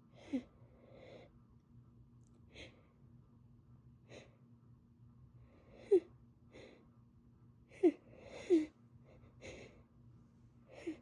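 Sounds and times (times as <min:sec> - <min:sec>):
woman breathing airily: 0:07.7 - 0:10.0, 0:10.6 - 0:11.0.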